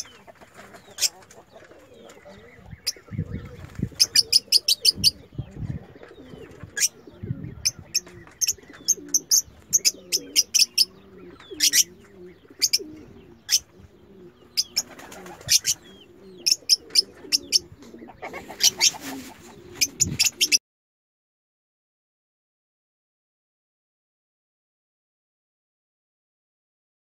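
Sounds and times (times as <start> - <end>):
lovebirds chirping: 0.0 - 20.6
low cooing call: 1.7 - 20.6.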